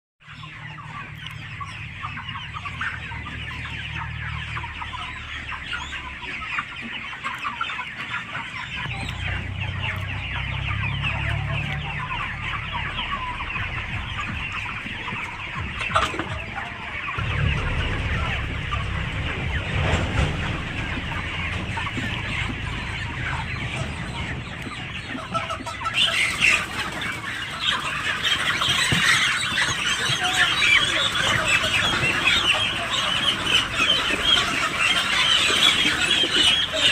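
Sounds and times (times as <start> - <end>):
chickens clucking: 0.2 - 36.9
low rumble: 1.4 - 6.8, 8.6 - 26.9.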